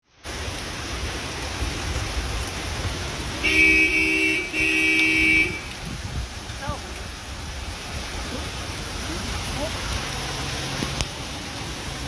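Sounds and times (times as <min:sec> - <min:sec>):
rain: 0:00.0 - 0:12.0
car horn honks: 0:03.4 - 0:05.8.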